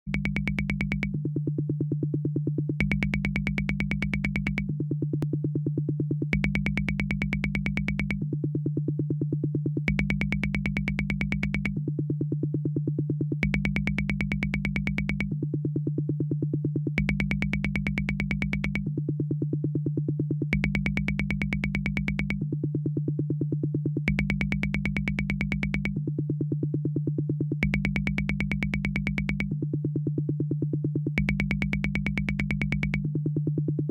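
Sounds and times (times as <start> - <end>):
fast electronic drum machine pattern: 0.1 - 1.3, 2.8 - 4.8, 6.4 - 8.3, 9.9 - 11.8, 13.4 - 15.4, 17.0 - 19.0, 20.5 - 22.5, 24.1 - 26.1, 27.6 - 29.8, 31.2 - 33.2
continuous low tone: 0.1 - 33.9.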